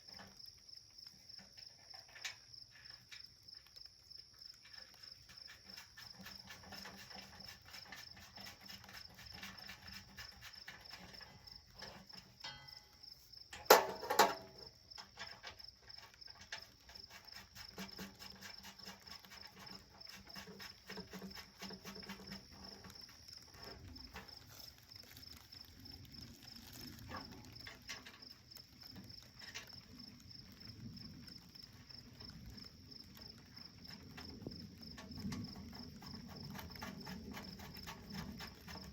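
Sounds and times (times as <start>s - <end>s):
clicks and knocks of stove parts: 9.4s - 22.9s.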